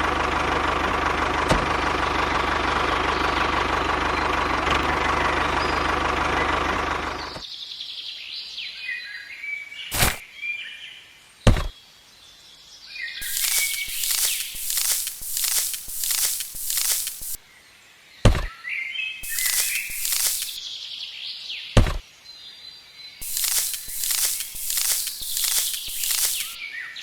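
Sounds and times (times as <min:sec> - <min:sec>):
birds chirping: 0:13.2 - 0:17.4, 0:19.2 - 0:20.7, 0:23.1 - 0:27.0
small motor running: 0:13.2 - 0:17.4, 0:19.2 - 0:20.6, 0:23.2 - 0:26.6
sharp knocks: 0:18.3 - 0:18.5, 0:21.8 - 0:22.0.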